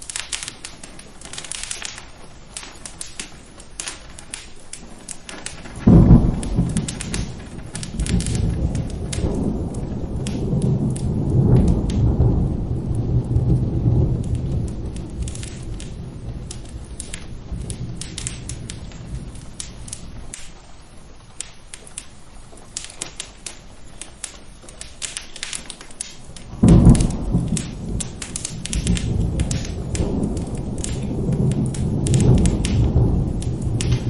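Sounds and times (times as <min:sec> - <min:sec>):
fireplace crackling: 0:00.0 - 0:34.0
rain: 0:00.0 - 0:34.0
thunder rumbling: 0:00.0 - 0:34.0
loud thunder clap: 0:05.4 - 0:20.4, 0:26.4 - 0:34.0.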